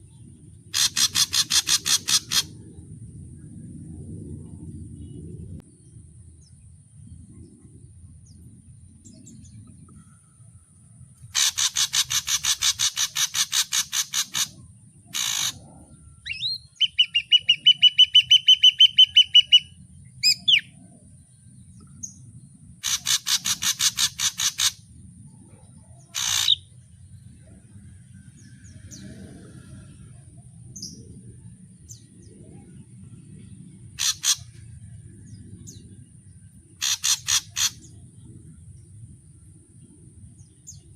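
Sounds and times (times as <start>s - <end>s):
bird singing harsh rattling notes: 0.1s - 2.7s, 11.3s - 20.7s, 22.8s - 25.0s, 26.0s - 26.8s, 33.8s - 38.3s
short bird calls: 0.7s - 2.5s, 11.3s - 15.6s, 26.1s - 26.6s, 34.0s - 34.5s, 36.8s - 37.9s
whistled bird trill: 16.2s - 20.7s.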